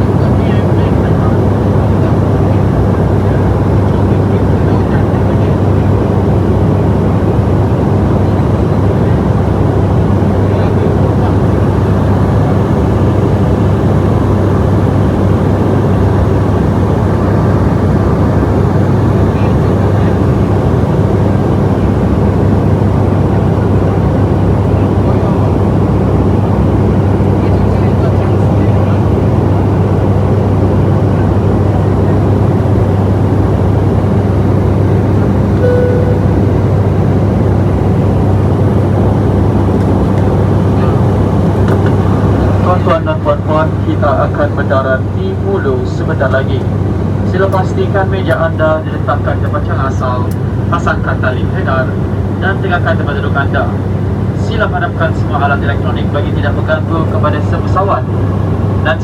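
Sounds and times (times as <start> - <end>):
propeller engines droning: 0.0 - 59.0
brief tone: 35.6 - 37.0.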